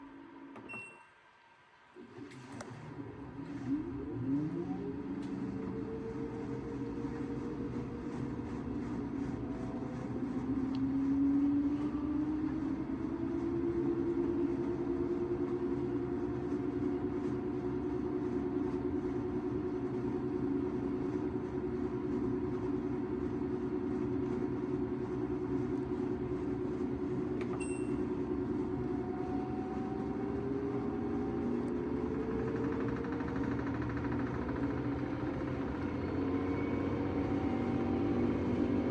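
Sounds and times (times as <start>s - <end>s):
washing machine motor whine: 1.7s - 38.9s.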